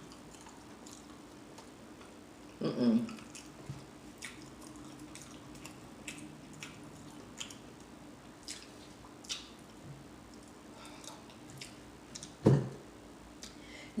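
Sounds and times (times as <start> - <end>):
wet mouth clicks and smacks: 4.2 - 12.4.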